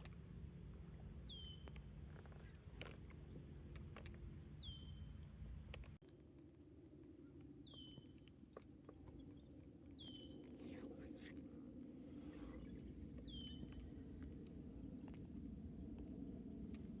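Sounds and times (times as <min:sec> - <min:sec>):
low wind or water noise: 0:08.2 - 0:17.0.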